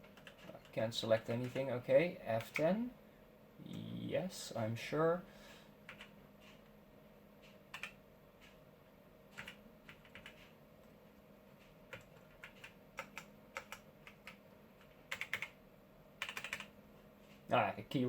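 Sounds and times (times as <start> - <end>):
laptop keys tapping: 0.0 - 0.7, 5.8 - 6.6, 7.4 - 8.6, 9.3 - 15.6, 16.2 - 16.8
faint steady hum: 0.0 - 18.0.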